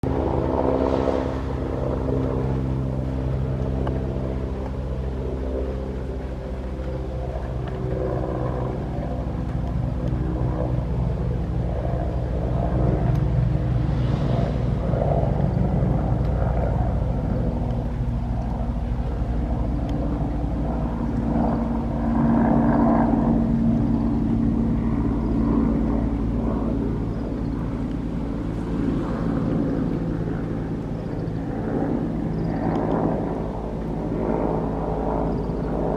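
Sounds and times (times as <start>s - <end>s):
helicopter flying past: 0.0s - 35.9s.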